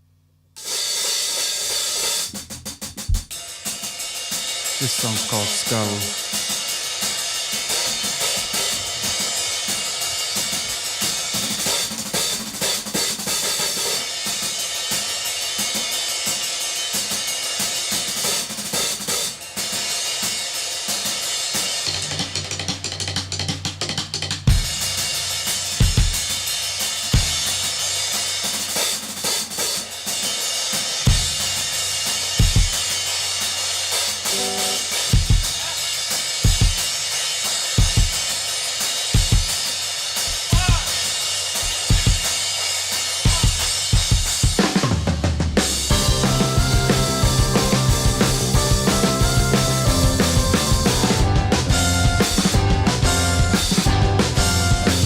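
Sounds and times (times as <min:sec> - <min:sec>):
bass drum hits: 0:03.0 - 0:03.3, 0:45.9 - 0:55.0
rock band playing: 0:04.7 - 0:14.6, 0:34.0 - 0:37.0, 0:40.2 - 0:42.4, 0:43.2 - 0:55.0.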